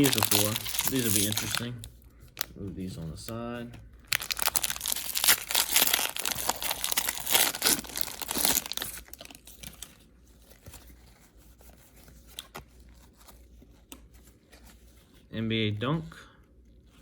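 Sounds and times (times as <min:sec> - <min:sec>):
wrapper tearing and crinkling: 0:00.0 - 0:01.8, 0:04.1 - 0:10.0.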